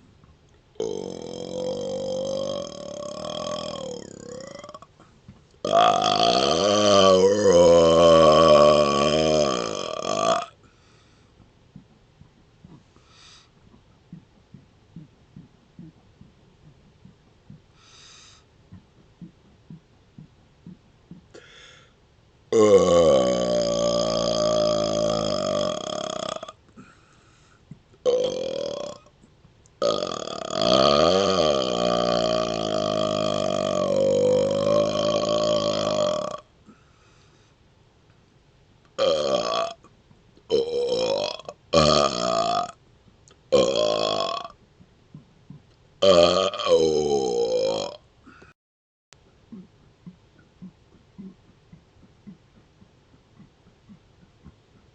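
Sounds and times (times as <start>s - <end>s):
long loud burp: 0.8s - 4.9s, 5.6s - 10.6s, 22.5s - 26.6s, 28.0s - 29.1s, 29.8s - 36.5s, 39.0s - 39.8s, 40.5s - 42.8s, 43.5s - 44.6s, 46.0s - 48.4s
short breaths: 10.6s - 11.4s, 12.9s - 13.6s, 17.7s - 18.5s, 21.3s - 22.0s, 26.8s - 27.7s, 36.6s - 37.6s, 48.2s - 48.5s.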